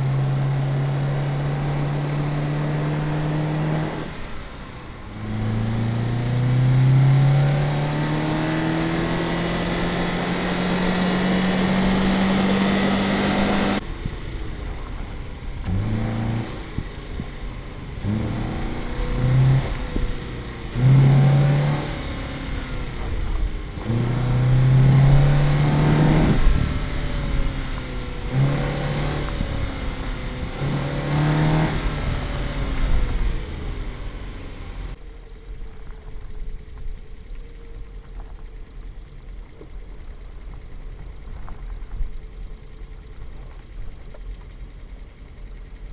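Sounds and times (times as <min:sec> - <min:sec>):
engine revving: 0:00.0 - 0:35.0
car engine accelerating: 0:00.0 - 0:45.9.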